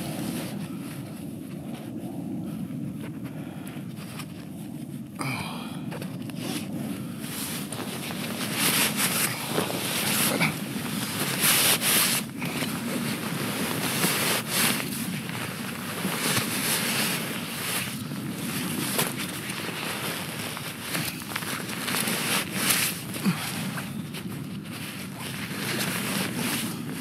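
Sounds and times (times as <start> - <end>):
nylon fabric rustling and crumpling: 6.0 - 27.0.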